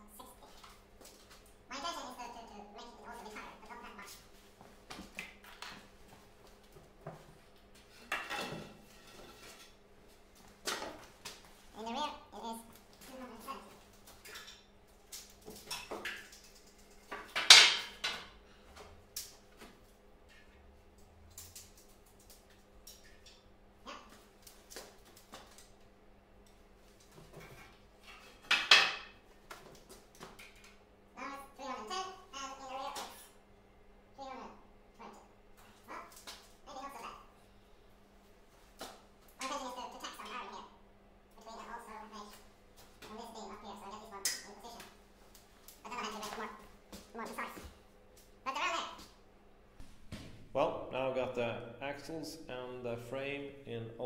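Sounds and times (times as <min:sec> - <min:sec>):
faint steady hum: 0:00.0 - 0:54.0
steady low hum: 0:29.1 - 0:54.0.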